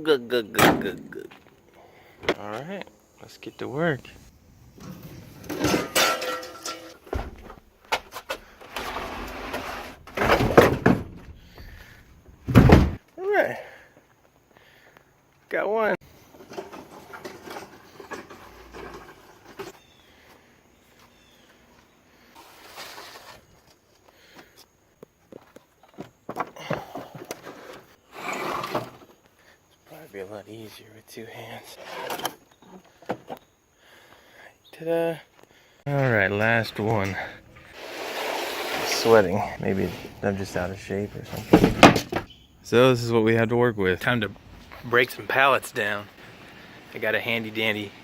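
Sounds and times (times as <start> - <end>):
wooden pallets clattering: 4.7 - 13.0, 16.2 - 19.8, 25.4 - 29.2, 36.4 - 42.3
wood scraping on wood: 4.8 - 12.0, 16.2 - 19.8, 22.2 - 23.8, 26.6 - 29.2, 31.7 - 33.4, 36.8 - 42.3
wooden knocks and clatters: 10.0 - 11.7, 41.3 - 42.3.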